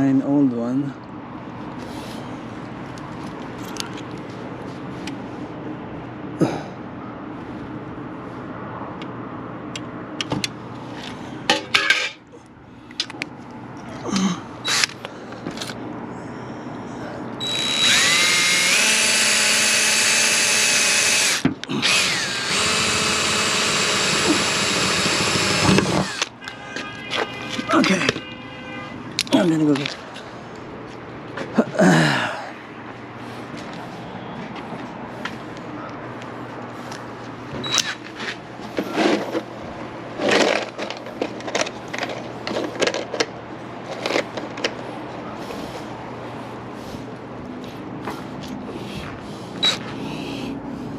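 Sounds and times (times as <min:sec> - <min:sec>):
tools being handled: 0:03.2 - 0:04.3, 0:40.2 - 0:44.8
power drill whining: 0:17.4 - 0:26.3.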